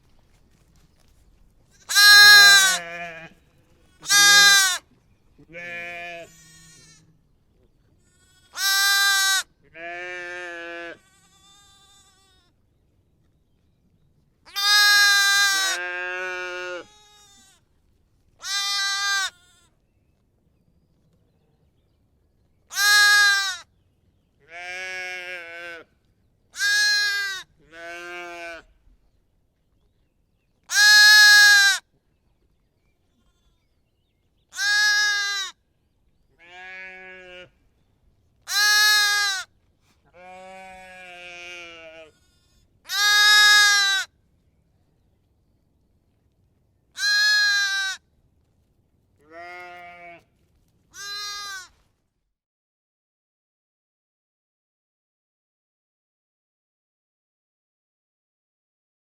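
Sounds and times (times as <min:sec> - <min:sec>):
lamb bleating: 0:01.8 - 0:04.8, 0:05.4 - 0:07.1, 0:08.0 - 0:12.5, 0:14.5 - 0:17.6, 0:18.4 - 0:19.7, 0:22.7 - 0:23.7, 0:24.5 - 0:25.8, 0:26.6 - 0:28.7, 0:30.7 - 0:31.8, 0:34.5 - 0:35.6, 0:36.4 - 0:37.6, 0:38.5 - 0:39.5, 0:40.1 - 0:44.1, 0:47.0 - 0:48.0, 0:49.2 - 0:50.2, 0:50.9 - 0:51.7.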